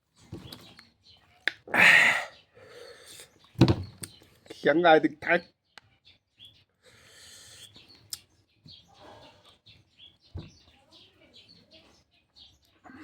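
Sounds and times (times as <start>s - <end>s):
mouth clicks and smacks: 1.4s - 2.1s, 7.3s - 8.3s.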